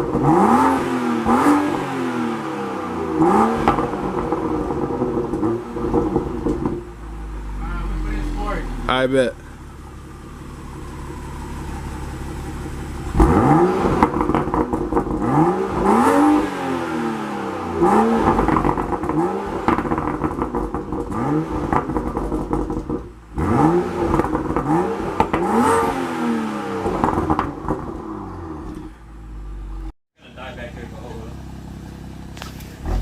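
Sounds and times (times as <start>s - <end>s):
car engine revving hard: 0.0s - 6.8s, 13.0s - 28.8s.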